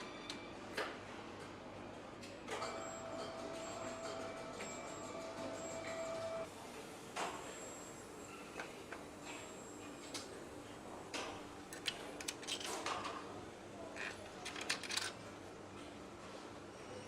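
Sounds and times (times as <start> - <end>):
steady factory hum: 0.0 - 17.0.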